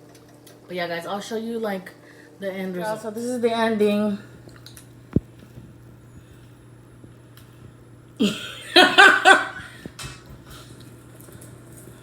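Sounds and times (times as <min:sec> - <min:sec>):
person laughing: 0:08.2 - 0:09.8.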